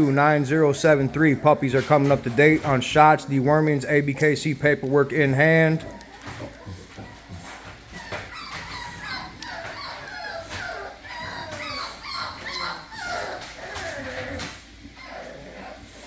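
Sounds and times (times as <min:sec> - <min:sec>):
puppy whining and yipping: 0:05.8 - 0:16.0.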